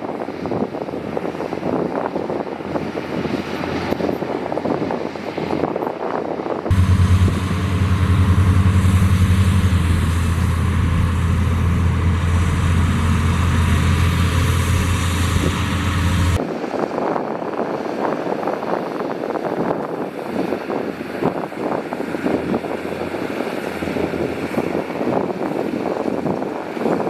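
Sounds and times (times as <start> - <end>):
heavy diesel engine running: 6.7 - 16.4
rough rumble with crackle: 6.7 - 16.4.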